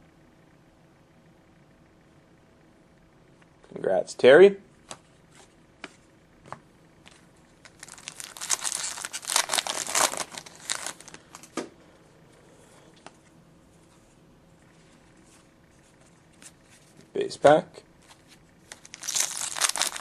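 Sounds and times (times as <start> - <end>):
foil wrapper tearing and crinkling: 7.6 - 11.5, 18.7 - 20.0.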